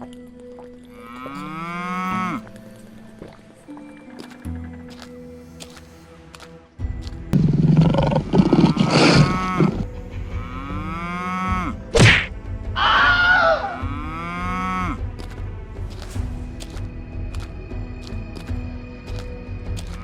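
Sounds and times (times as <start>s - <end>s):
cow mooing: 7.7s - 11.8s
sharp whack: 12.0s - 12.4s.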